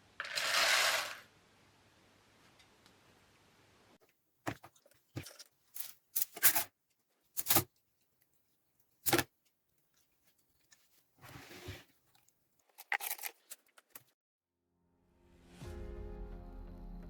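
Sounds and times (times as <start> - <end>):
scraping and rustling handling noises: 4.5 - 14.2.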